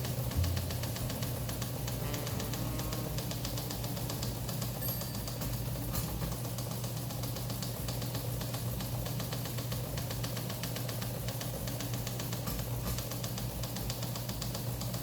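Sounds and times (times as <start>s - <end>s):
motor humming: 0.0s - 6.3s.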